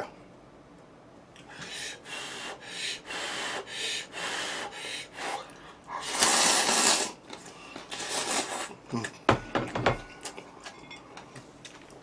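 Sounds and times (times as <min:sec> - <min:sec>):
man slurping noodles: 0:06.0 - 0:07.2, 0:07.9 - 0:08.8.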